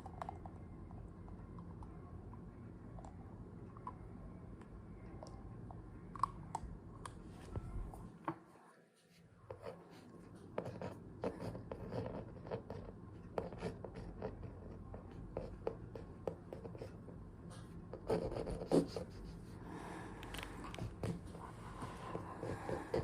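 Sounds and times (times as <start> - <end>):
pen scratching on paper: 9.5 - 17.0, 17.6 - 19.6, 20.8 - 23.0.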